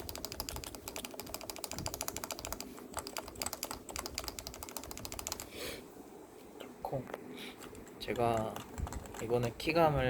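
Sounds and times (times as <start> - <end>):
fast typing on keyboard: 0.0 - 5.6, 7.6 - 9.7.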